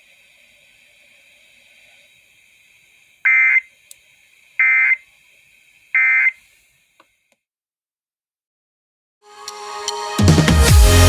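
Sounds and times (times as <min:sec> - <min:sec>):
faint radio hiss: 0:00.0 - 0:07.4
digital data tone bursts: 0:03.3 - 0:03.7, 0:04.6 - 0:05.0, 0:06.0 - 0:06.4.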